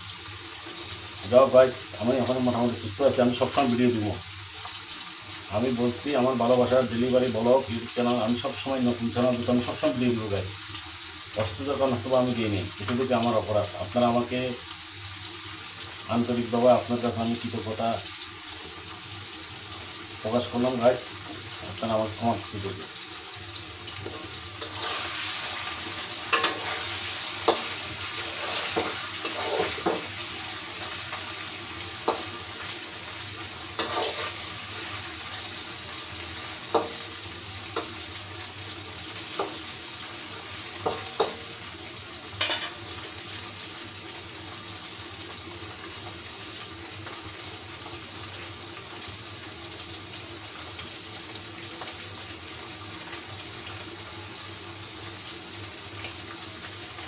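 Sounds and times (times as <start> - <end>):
steady hiss: 11.3 - 45.7.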